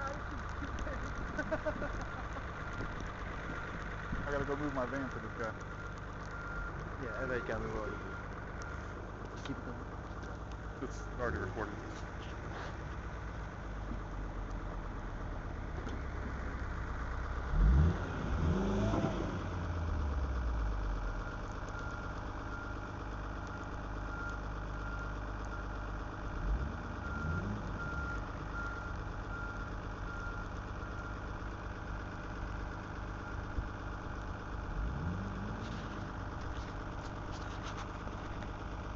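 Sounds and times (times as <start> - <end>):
car engine idling and revving: 0.0 - 38.9
faint repeated beep: 6.3 - 8.8.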